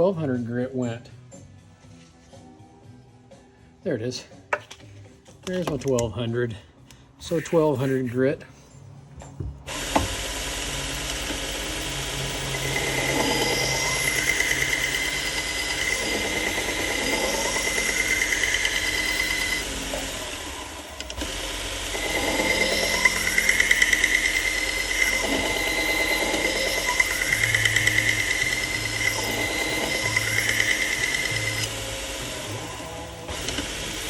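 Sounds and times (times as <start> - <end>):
belt sharpener running: 9.7 - 34.0.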